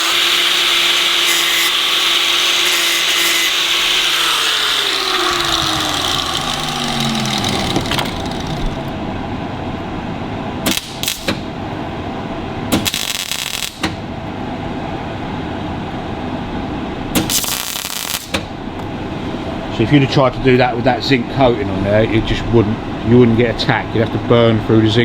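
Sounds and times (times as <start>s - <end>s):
welding bursts: 0.0s - 8.9s, 10.6s - 11.5s, 12.7s - 14.0s, 17.2s - 18.5s
workshop hum: 0.0s - 25.0s.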